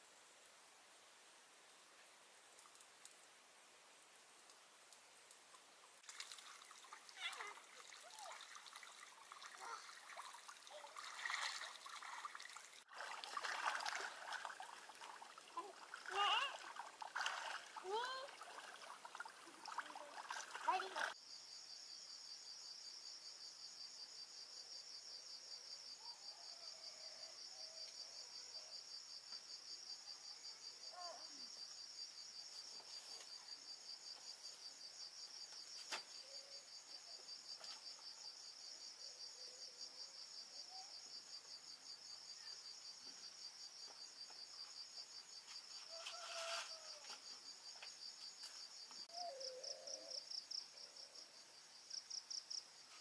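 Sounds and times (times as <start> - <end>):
insects trilling: 5.9 - 25.1, 25.8 - 53.0
brief rustle: 45.9 - 47.2.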